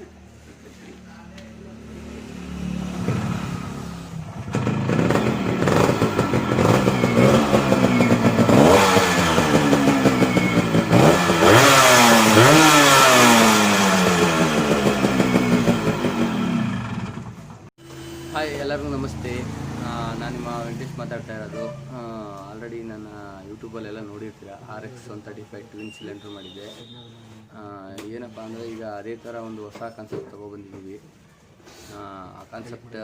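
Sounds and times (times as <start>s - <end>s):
two-stroke motorcycle engine revving: 1.7s - 22.0s.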